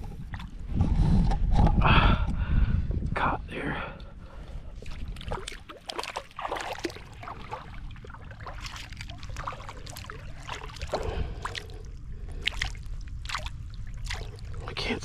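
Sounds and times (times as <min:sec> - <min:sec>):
river water running: 0:04.2 - 0:15.0
small splashes and knocks: 0:04.8 - 0:14.9.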